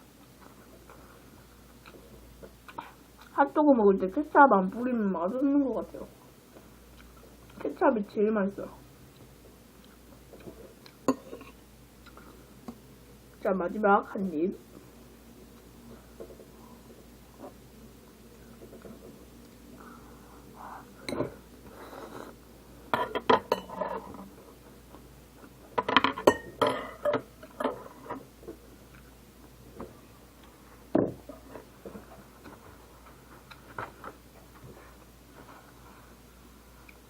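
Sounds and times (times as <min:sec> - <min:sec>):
cutlery clinking and scraping dish: 0:25.8 - 0:27.9.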